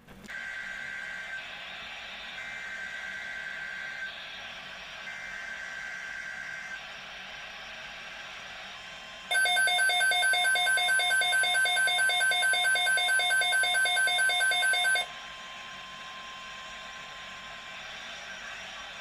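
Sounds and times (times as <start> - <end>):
electronic alert tone beeping: 9.3 - 15.1.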